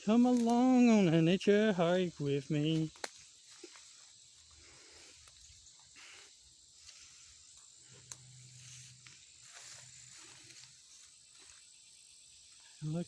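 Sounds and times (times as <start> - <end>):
high insect drone: 0.0 - 13.0
soft rustling footsteps: 6.7 - 11.9.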